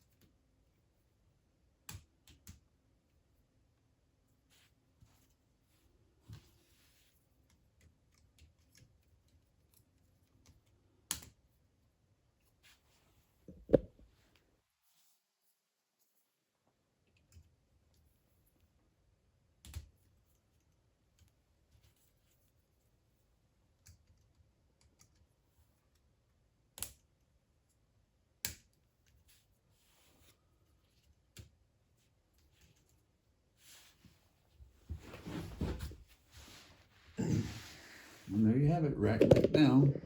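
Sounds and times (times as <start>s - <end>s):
plastic parts knocking: 13.5s - 14.0s, 39.1s - 40.0s.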